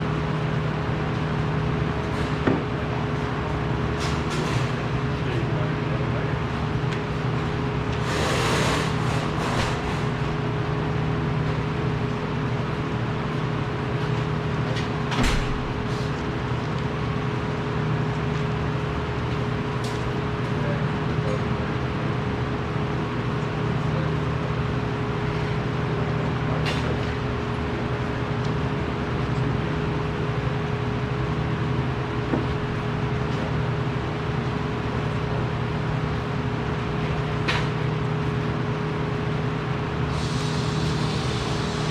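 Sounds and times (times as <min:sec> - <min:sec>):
machinery hum: 0:00.0 - 0:41.9.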